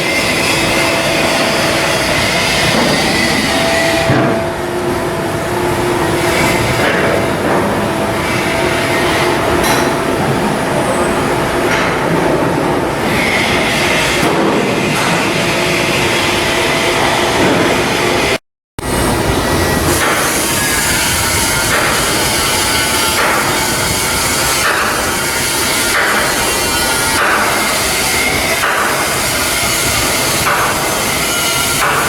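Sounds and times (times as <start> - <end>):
machinery and metalworking clatter: 0.0 - 32.0.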